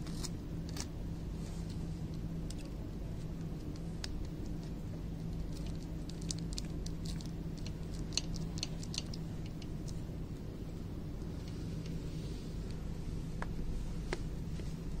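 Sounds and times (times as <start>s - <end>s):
steady low hum: 0.0s - 15.0s
small objects clicking and tapping: 5.4s - 10.0s.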